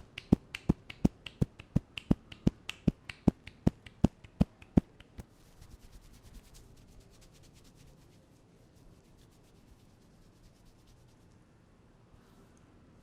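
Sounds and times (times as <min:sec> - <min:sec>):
hand slaps on head: 0:00.0 - 0:05.2
light quick patting: 0:00.0 - 0:05.2.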